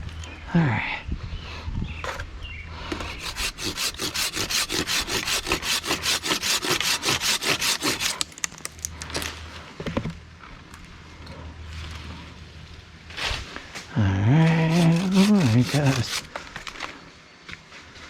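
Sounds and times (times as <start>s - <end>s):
handsaw cutting wood: 2.9s - 8.2s, 14.6s - 16.4s.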